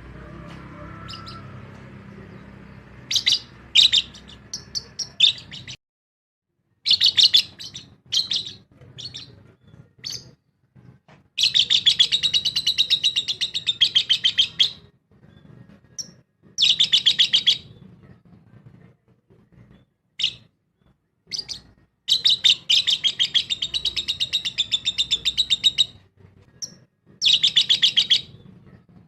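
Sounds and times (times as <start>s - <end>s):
lovebirds chirping: 1.1s - 5.8s, 11.4s - 17.9s, 21.3s - 28.6s.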